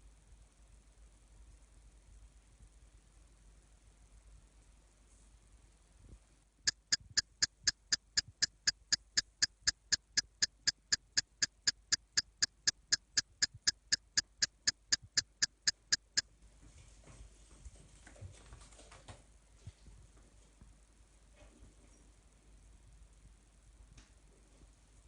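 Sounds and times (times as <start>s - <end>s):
sharp ticking: 6.7s - 16.2s.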